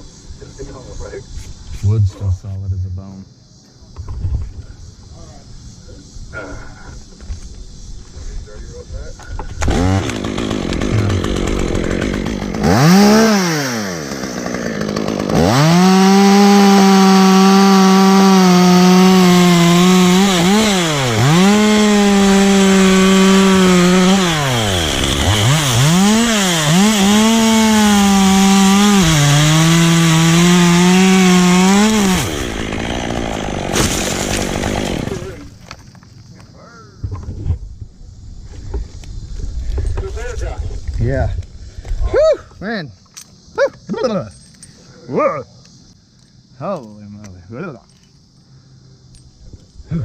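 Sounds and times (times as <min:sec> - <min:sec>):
chainsaw cutting wood: 0:09.6 - 0:35.4.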